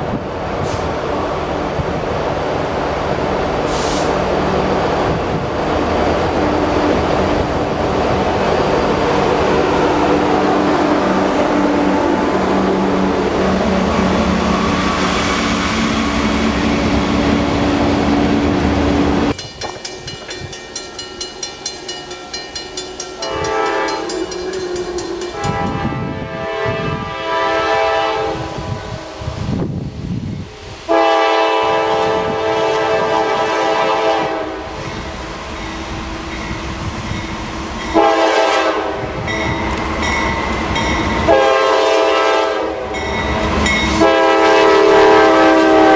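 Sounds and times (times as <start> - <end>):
diesel train passing: 0.0 - 45.9
train rolling noise: 0.0 - 45.9
locomotive air horn: 23.2 - 29.4, 30.9 - 34.9, 38.0 - 39.2, 41.2 - 43.0, 43.9 - 45.9.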